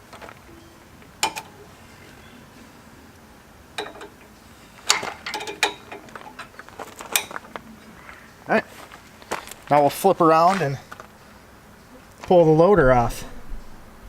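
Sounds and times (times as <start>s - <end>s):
metal clanks: 3.7s - 7.9s
clicks and knocks: 3.8s - 7.6s.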